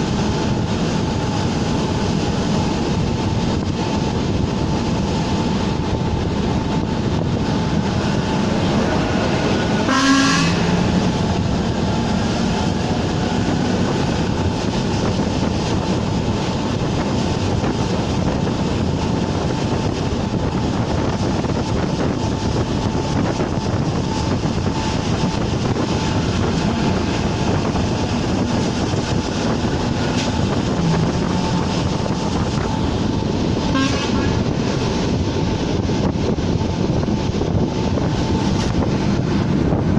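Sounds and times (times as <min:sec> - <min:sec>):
electric train running: 0:00.0 - 0:39.9
train horn toot: 0:09.8 - 0:11.1, 0:33.7 - 0:34.5.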